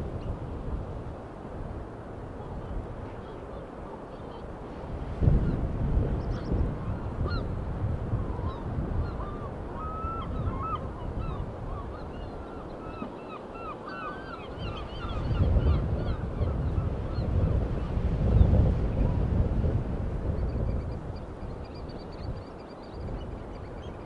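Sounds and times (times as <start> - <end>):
low wind rumble: 0.0 - 24.0
seaside birds calling: 6.2 - 7.5, 8.2 - 18.5, 20.3 - 24.0.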